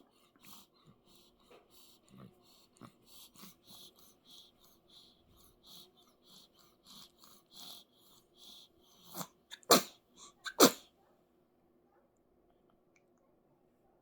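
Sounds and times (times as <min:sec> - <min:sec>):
baby breathing in snuffly puffs: 0:00.0 - 0:10.8
baby sneezing: 0:09.2 - 0:10.9.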